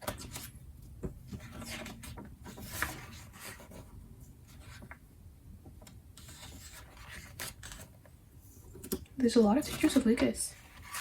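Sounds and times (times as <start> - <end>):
magazine pages turning: 1.4 - 3.9, 6.2 - 8.1, 10.6 - 11.0.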